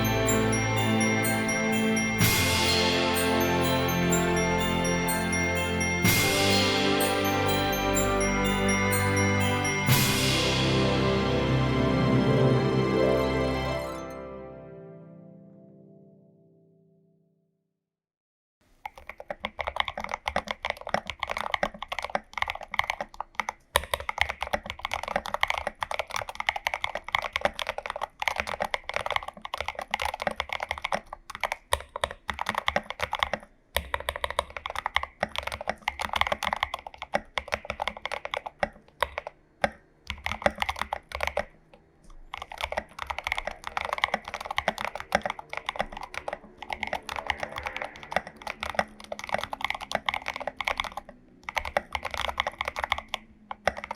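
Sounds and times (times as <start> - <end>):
fast typing on mechanical keyboard: 18.8 - 53.9.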